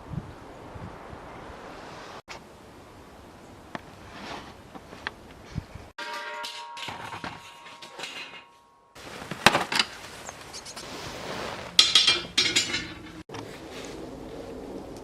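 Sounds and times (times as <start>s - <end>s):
metal ringing: 6.0s - 9.0s, 11.8s - 13.2s
metal tools clanking: 6.0s - 9.0s, 11.7s - 13.3s.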